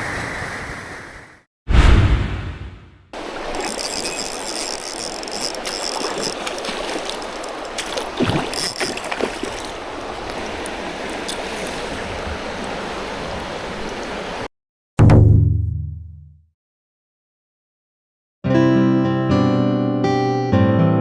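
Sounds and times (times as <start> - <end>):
stream rushing: 3.2 - 14.5.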